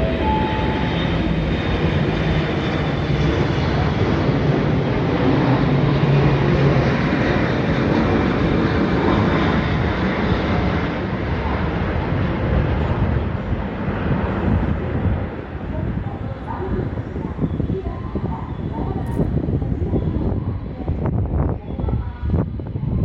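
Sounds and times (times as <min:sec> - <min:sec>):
passing train rushing: 0:00.0 - 0:04.4, 0:13.2 - 0:20.5
low hum: 0:00.0 - 0:06.0
low-flying jet airliner: 0:00.0 - 0:23.0.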